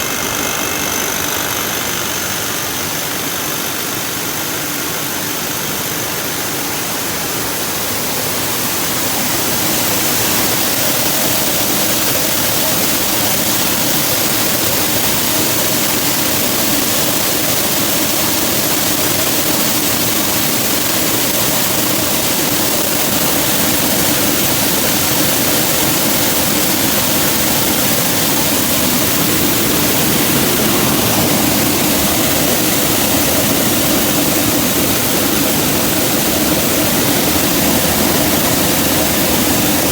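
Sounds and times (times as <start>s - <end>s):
combine harvester running: 0.0s - 39.9s.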